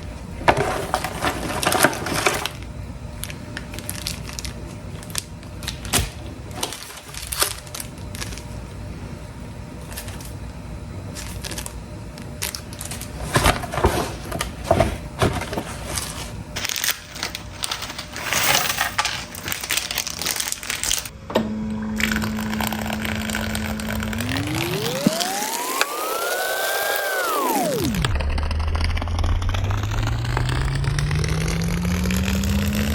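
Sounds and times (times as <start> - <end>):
electronic tone sweeping in pitch: 22.0 - 32.9.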